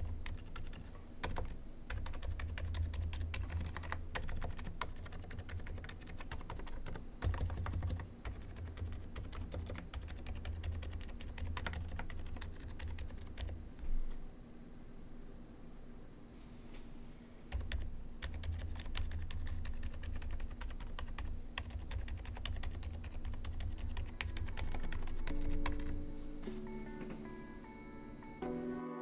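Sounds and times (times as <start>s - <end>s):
typing on a mechanical keyboard: 0.0s - 13.6s, 17.5s - 26.0s.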